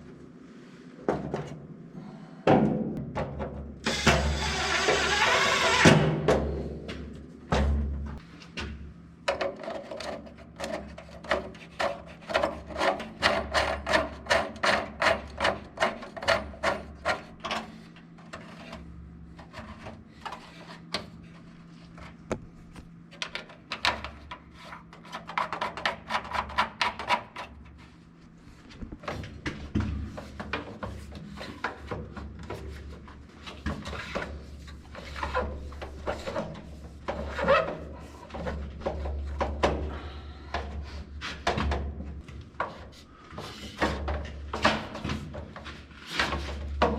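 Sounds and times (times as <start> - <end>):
hand tool rasping strokes: 3.9 - 5.9.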